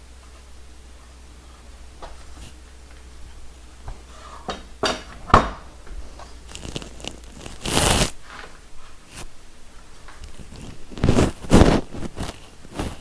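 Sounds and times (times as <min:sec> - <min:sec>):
scraping rustle: 0:06.0 - 0:09.4, 0:10.0 - 0:13.0.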